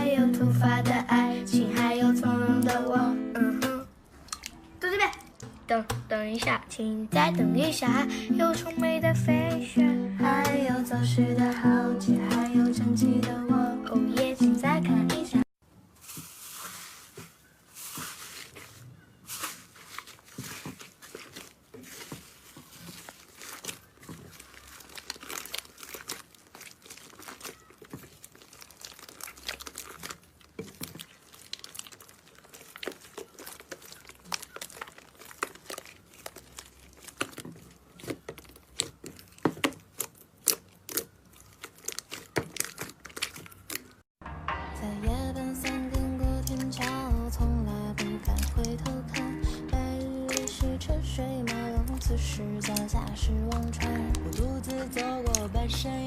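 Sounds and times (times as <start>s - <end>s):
slime crackling when squeezed: 19.3s - 44.1s, 48.2s - 49.4s, 50.2s - 50.8s, 51.8s - 55.8s.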